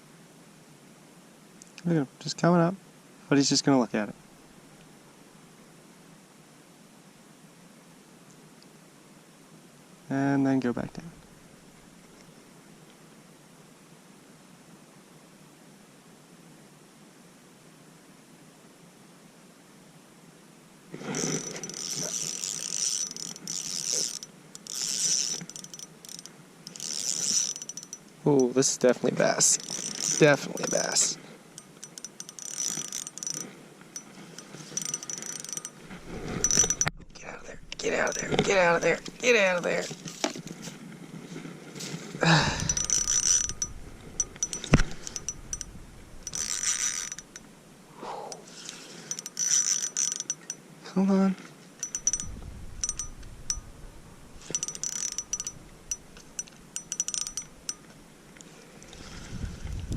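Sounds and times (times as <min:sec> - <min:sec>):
fishing reel ratcheting whir: 0:21.1 - 0:28.5, 0:29.2 - 0:37.0, 0:37.7 - 0:39.3, 0:42.5 - 0:47.4, 0:49.1 - 0:50.6, 0:51.8 - 0:57.9.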